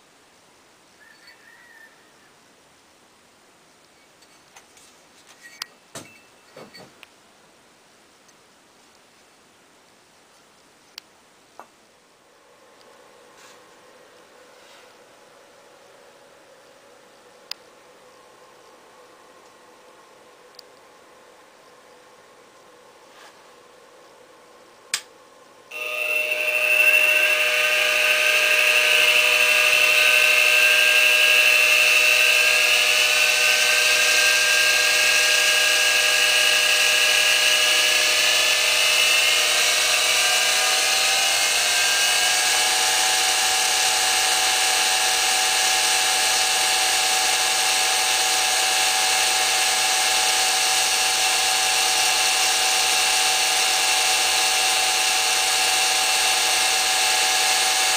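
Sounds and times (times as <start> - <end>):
milling machine whining: 25.7 - 57.9.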